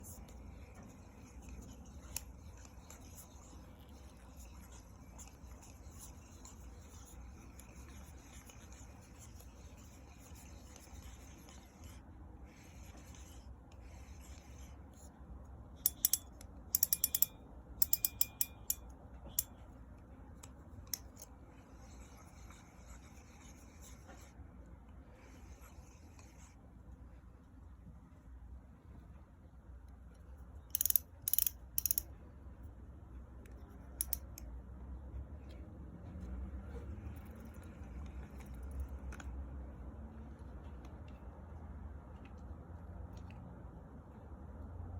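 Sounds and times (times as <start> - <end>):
sharp reel clicks: 15.9 - 18.8, 30.7 - 32.0
fishing reel gear rubbing: 16.8 - 18.4, 30.7 - 32.0.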